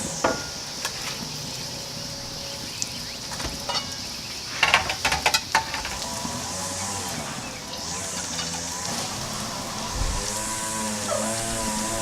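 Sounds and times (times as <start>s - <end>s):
food sizzling on a grill: 0.0s - 12.0s
clicks and clatters: 4.6s - 6.1s.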